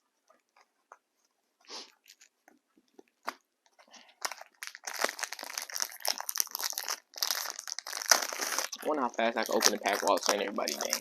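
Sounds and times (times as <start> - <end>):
wrapper crinkling and tearing: 3.2 - 11.0.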